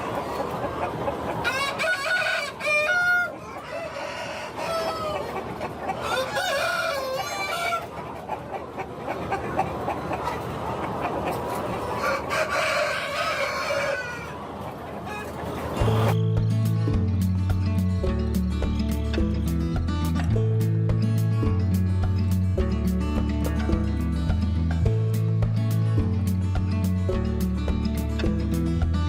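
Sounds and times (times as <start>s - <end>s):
chickens clucking: 0.0s - 16.2s
rooster crowing: 1.5s - 5.3s, 6.0s - 7.9s, 12.0s - 14.4s.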